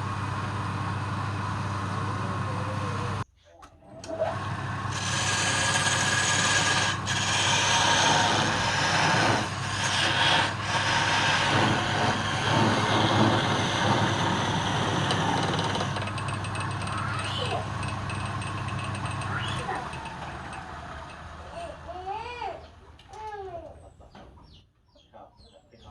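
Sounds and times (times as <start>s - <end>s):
lathe motor hum: 4.1s - 21.9s
wood scraping on lathe: 4.3s - 21.8s.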